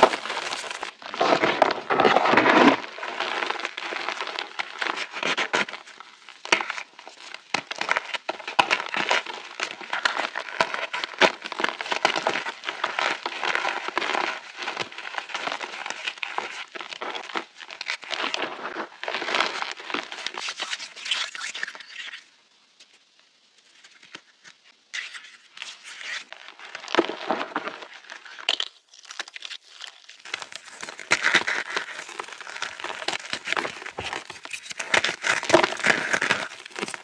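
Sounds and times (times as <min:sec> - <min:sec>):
chalk being crushed: 0:00.0 - 0:01.3, 0:27.0 - 0:37.0.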